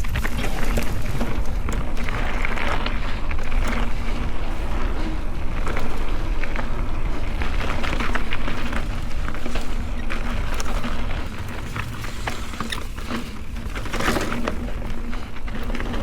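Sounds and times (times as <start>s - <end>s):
bike rattles and clicks: 0.0s - 16.0s
bike tyres rolling over dirt: 0.0s - 16.0s
wind rumble on microphone: 0.0s - 16.0s.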